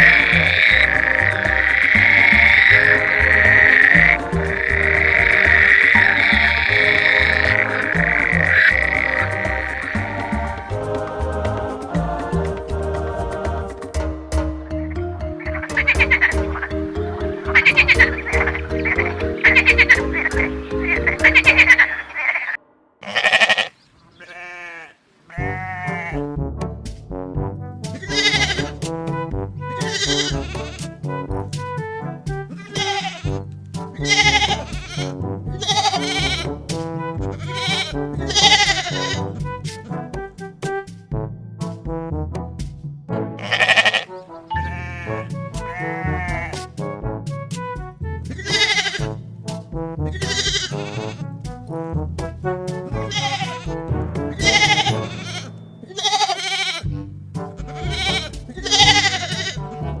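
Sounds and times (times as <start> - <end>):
background music: 0.0 - 22.6, 25.4 - 60.0
animal bleating: 23.0 - 26.2, 28.0 - 28.7, 29.8 - 30.9, 32.5 - 33.3, 34.0 - 36.6, 37.3 - 39.4, 43.4 - 46.6, 48.3 - 49.1, 50.1 - 51.2, 53.0 - 57.0, 57.6 - 59.8.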